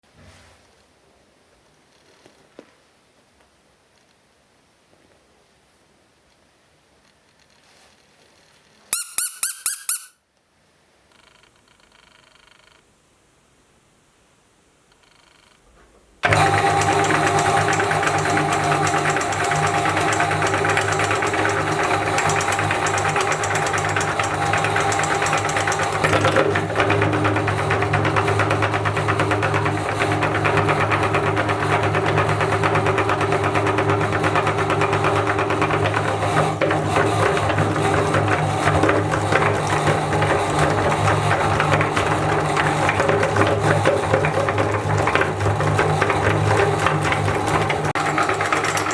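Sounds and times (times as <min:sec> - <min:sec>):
electric meat grinder running: 0:16.2 - 0:48.9.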